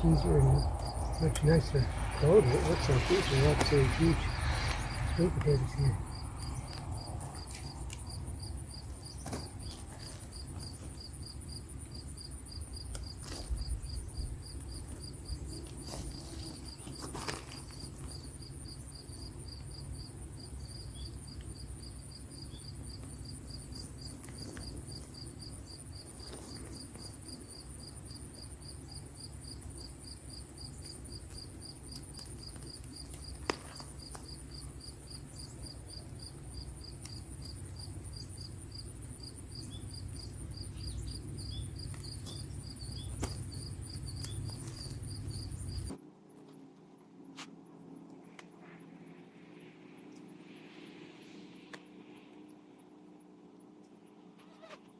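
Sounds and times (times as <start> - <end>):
low outdoor rumble: 0.0 - 12.8, 30.4 - 46.0
crickets chirping: 0.0 - 54.9
hands working in soil: 41.4 - 45.9.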